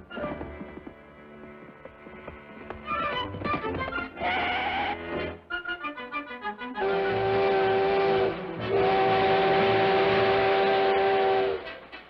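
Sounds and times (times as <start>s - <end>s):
steam locomotive whistle blasts: 6.8s - 12.0s.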